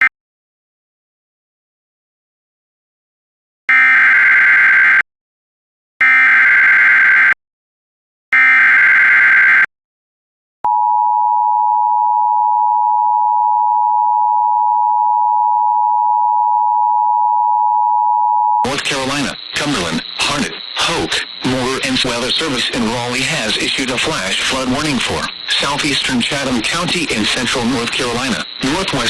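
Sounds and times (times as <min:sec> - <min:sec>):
screechy data tones: 0:18.6 - 0:29.0.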